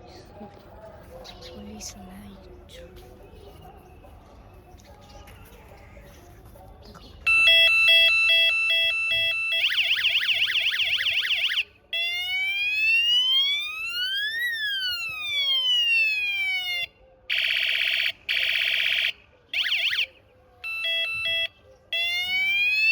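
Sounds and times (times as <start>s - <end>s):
electronic police siren: 7.3s - 22.9s.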